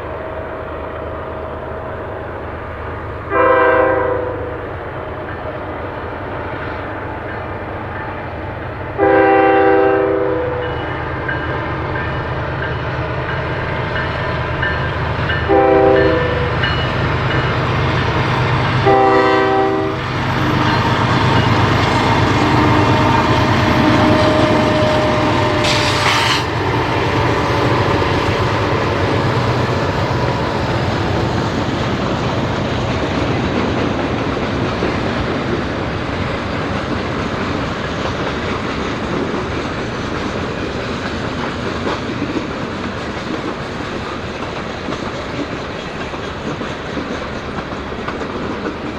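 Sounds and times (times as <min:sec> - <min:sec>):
locomotive horn blasts: 0:03.3 - 0:04.6, 0:09.0 - 0:10.8, 0:15.5 - 0:16.6, 0:18.8 - 0:20.0, 0:22.5 - 0:26.6
train wheels clattering on rails: 0:04.5 - 0:48.9.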